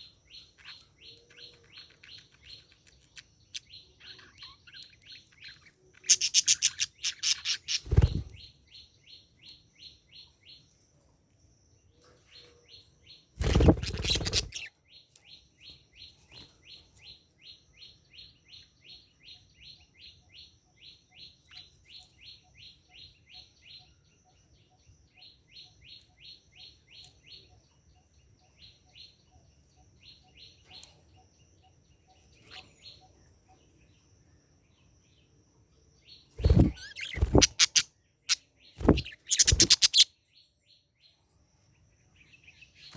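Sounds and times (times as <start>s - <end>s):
budgerigar chirping: 0.6s - 7.8s, 13.8s - 14.7s, 36.4s - 40.1s.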